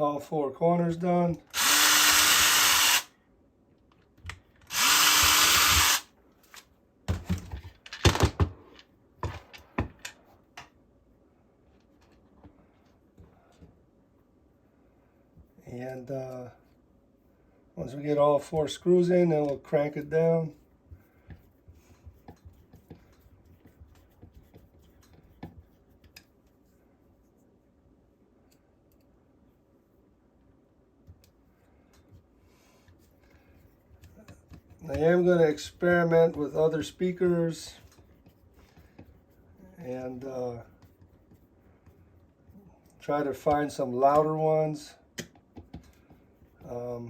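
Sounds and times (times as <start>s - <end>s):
power drill driving a screw: 1.5s - 3.1s, 4.7s - 6.1s.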